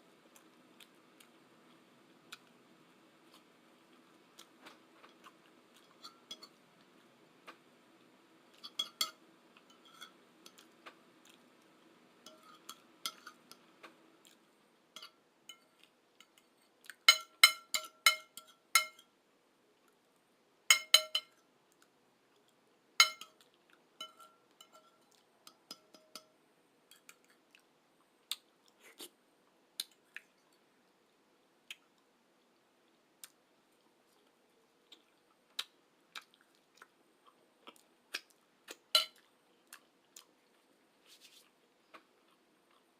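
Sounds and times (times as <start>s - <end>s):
cutlery clinking against dishes: 5.8s - 6.6s, 8.6s - 10.7s, 12.3s - 13.4s, 17.1s - 19.1s, 20.7s - 21.4s, 23.0s - 23.4s, 24.0s - 27.1s, 38.9s - 39.2s
chewing: 9.6s - 11.7s, 14.2s - 17.1s, 33.2s - 42.9s.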